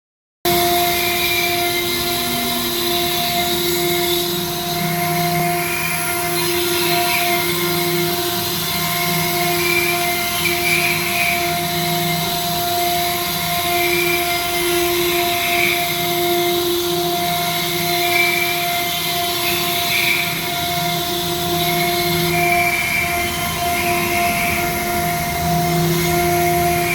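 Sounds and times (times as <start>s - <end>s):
router motor whine: 0.5s - 26.9s.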